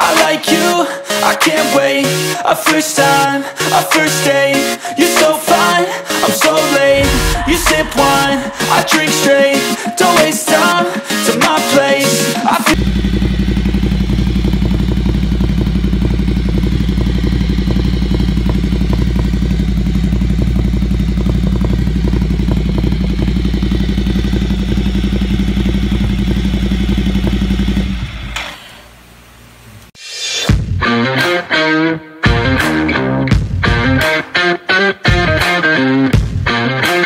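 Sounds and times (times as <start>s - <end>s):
engine running steadily: 12.8s - 28.5s.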